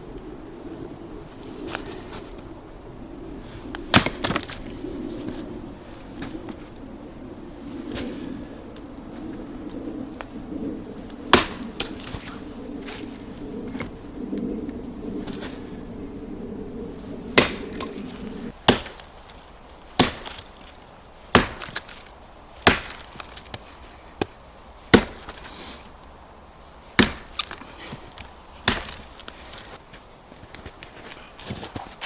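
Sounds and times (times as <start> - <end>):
wood chopping blows: 3.8 - 4.8, 11.3 - 14.0, 17.3 - 25.9, 27.0 - 29.8.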